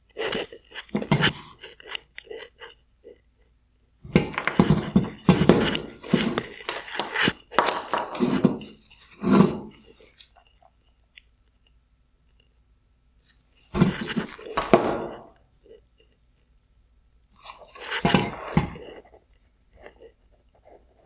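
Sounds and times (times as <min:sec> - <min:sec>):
plastic parts crunching and clicking: 0:04.1 - 0:08.5.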